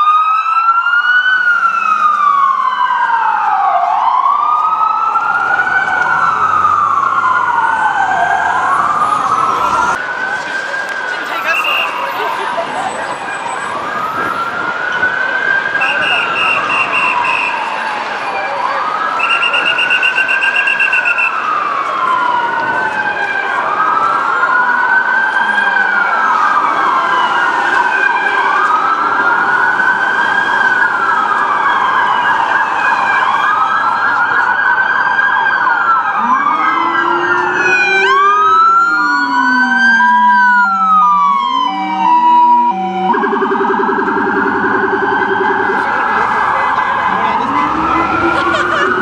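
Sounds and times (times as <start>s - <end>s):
ambulance siren wailing: 0.0s - 49.0s
lower siren tone sweeping: 35.9s - 49.0s.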